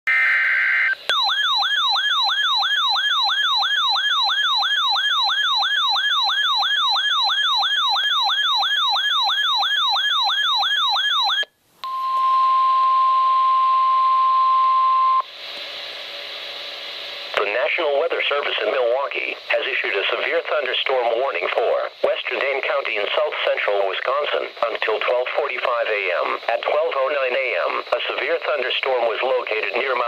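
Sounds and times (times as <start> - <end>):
steady alarm tone: 0.1 - 11.5
siren alert tone sweeping: 0.1 - 15.2
faint radio hiss: 15.2 - 30.0.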